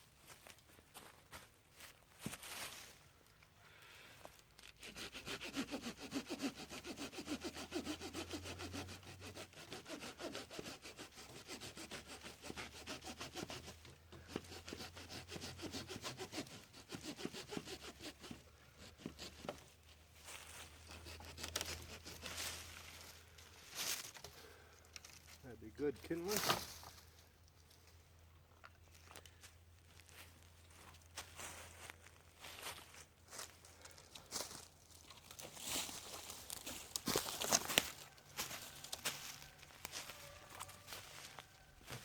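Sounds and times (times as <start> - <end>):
hand saw cutting wood: 4.8 - 19.8, 20.6 - 24.3, 36.4 - 42.0.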